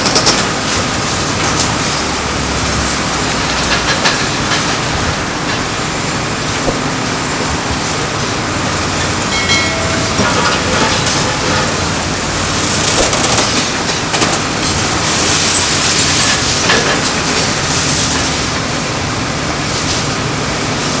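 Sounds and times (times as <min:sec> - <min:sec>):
bulldozer running: 0:00.0 - 0:21.0.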